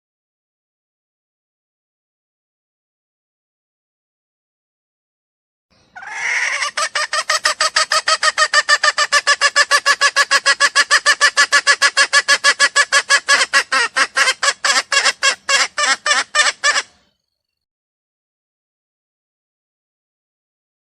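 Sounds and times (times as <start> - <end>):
junglefowl clucking call: 6.0 - 17.0.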